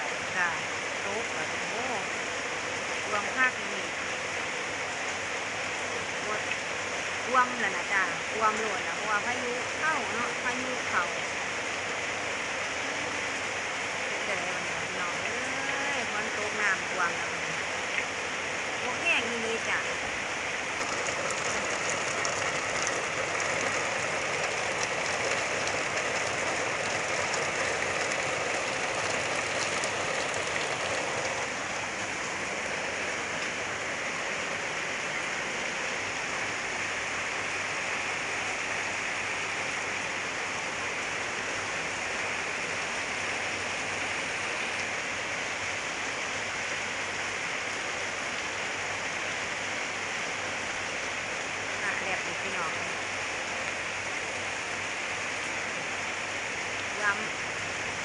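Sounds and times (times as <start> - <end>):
heavy rain pouring: 0.0 - 58.0.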